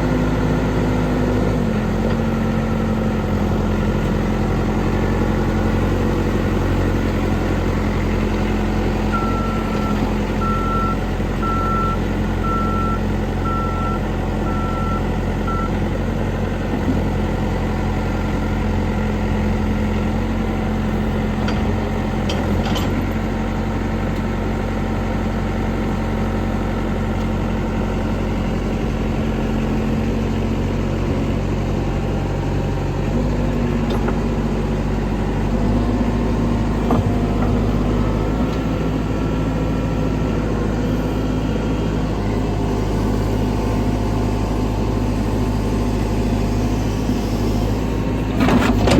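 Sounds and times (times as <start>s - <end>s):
diesel engine running: 0.0s - 48.9s
reversing alarm beeps: 9.1s - 15.8s.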